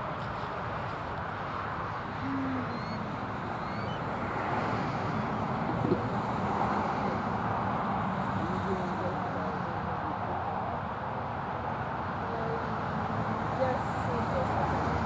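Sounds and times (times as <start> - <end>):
distant traffic hum: 0.0 - 15.0
faint high bird chirps: 2.2 - 3.0, 3.6 - 4.0
low hoot-like bird call: 2.2 - 3.0.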